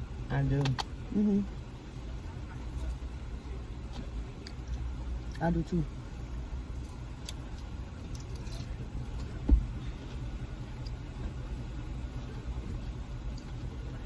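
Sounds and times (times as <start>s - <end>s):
short thump: 9.4s - 9.7s.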